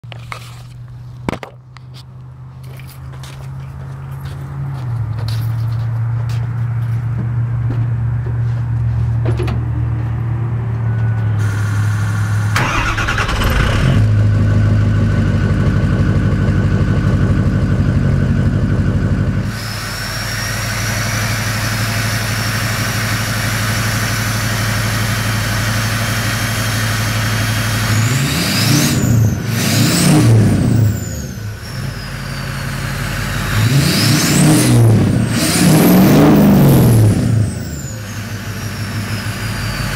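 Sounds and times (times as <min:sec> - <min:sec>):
diesel engine idling and revving: 0:00.0 - 0:39.9
turbo whistle: 0:37.8 - 0:39.9.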